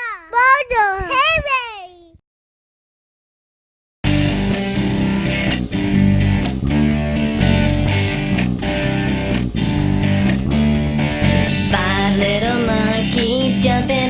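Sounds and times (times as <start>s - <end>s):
strummed guitars over bass: 4.0s - 14.0s.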